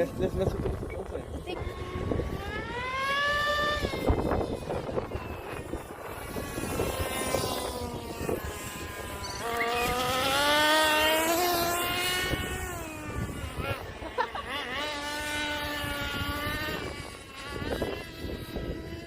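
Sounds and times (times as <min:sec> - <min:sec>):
model engine revving: 0:00.0 - 0:19.0.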